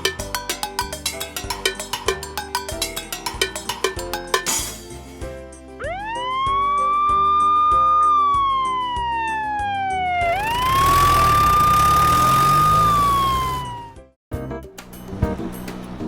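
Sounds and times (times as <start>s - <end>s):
background music: 0.0s - 16.0s
siren wailing: 5.8s - 14.1s.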